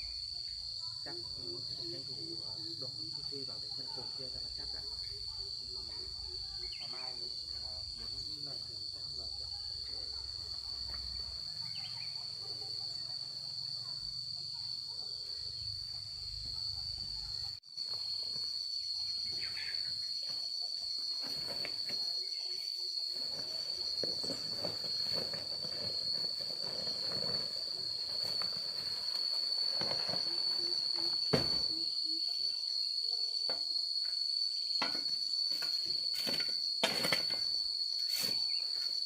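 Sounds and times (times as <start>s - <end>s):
insects chirring drone: 0.0s - 39.0s.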